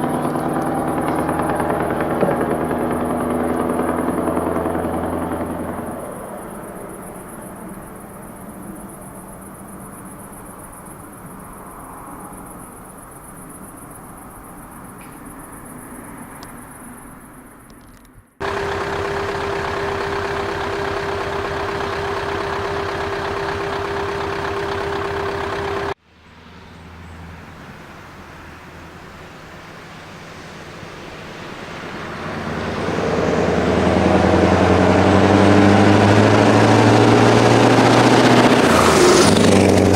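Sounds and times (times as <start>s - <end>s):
steady drone with held tone: 0.0s - 12.1s
truck engine with open exhaust: 0.0s - 39.9s.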